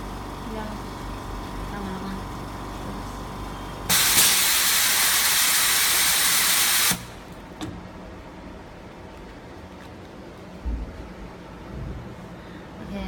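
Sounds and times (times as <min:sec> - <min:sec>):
low machine hum: 0:00.0 - 0:04.6, 0:07.0 - 0:13.0
loud air hiss: 0:03.9 - 0:07.2.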